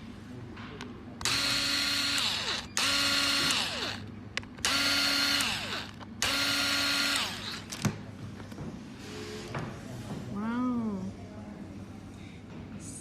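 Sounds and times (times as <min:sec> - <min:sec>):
electric screwdriver running: 0:01.2 - 0:04.0, 0:04.6 - 0:07.7.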